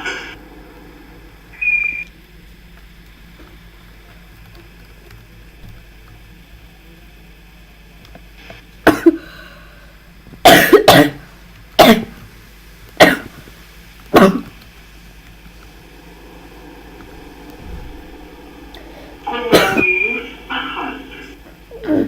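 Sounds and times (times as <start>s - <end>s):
faint low hum: 0.0s - 22.0s
person coughing: 8.8s - 9.4s, 10.4s - 11.2s, 11.8s - 12.2s, 13.0s - 13.3s, 14.1s - 14.5s, 19.5s - 19.9s.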